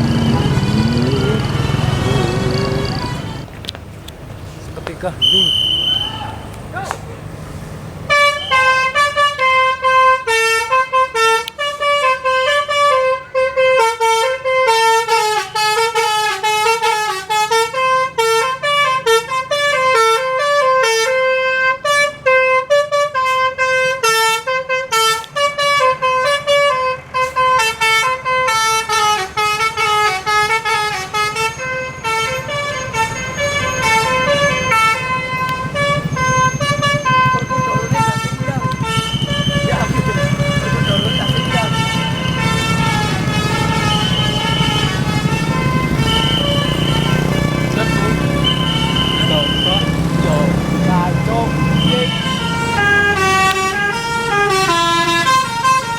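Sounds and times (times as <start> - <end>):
bus musical horn tune: 0.0 - 3.5, 8.0 - 55.9
low engine hum: 0.0 - 10.3, 31.8 - 55.8.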